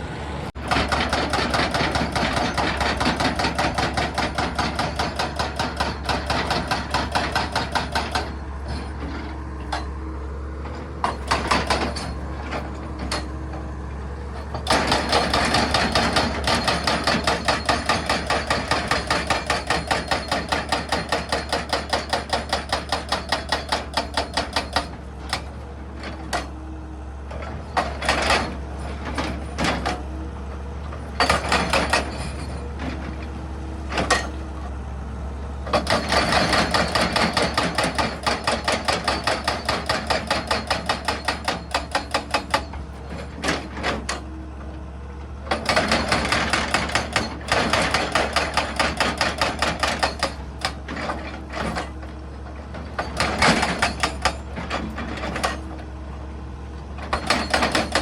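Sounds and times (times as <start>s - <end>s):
engine low hum: 0.0s - 0.7s, 8.1s - 16.6s, 24.7s - 38.5s, 42.4s - 48.2s, 50.2s - 58.0s
hydraulic breaker hammering stone: 0.6s - 8.9s, 11.0s - 13.3s, 14.4s - 26.5s, 31.2s - 32.5s, 33.9s - 34.4s, 35.7s - 44.3s, 45.5s - 52.0s, 52.9s - 55.8s, 57.0s - 58.0s.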